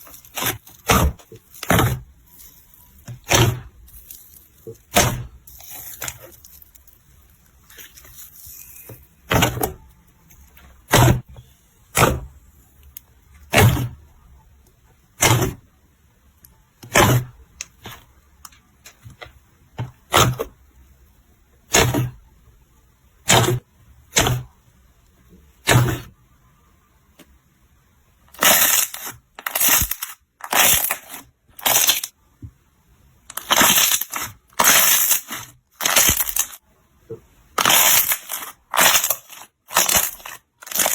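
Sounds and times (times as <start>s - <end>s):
slime crackling when pressed: 33.3s - 36.6s, 37.6s - 40.9s.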